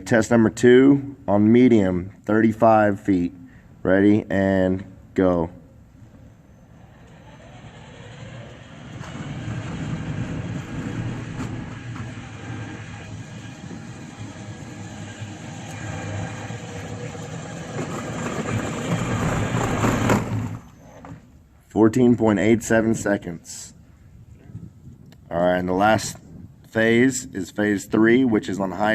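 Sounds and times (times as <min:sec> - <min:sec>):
wheels rumbling over ground: 0:05.9 - 0:21.2
electric motor driving: 0:06.4 - 0:20.8.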